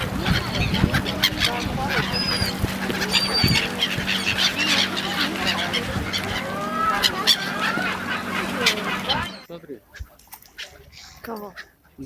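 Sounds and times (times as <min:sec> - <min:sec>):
steady low hum: 0:00.0 - 0:09.5
waterbirds honking and squawking: 0:00.0 - 0:12.0.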